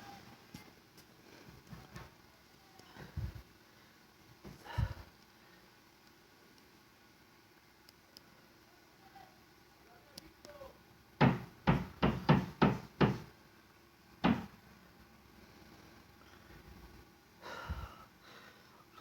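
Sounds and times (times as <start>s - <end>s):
loud banging knocks: 11.2s - 13.3s, 14.2s - 14.6s.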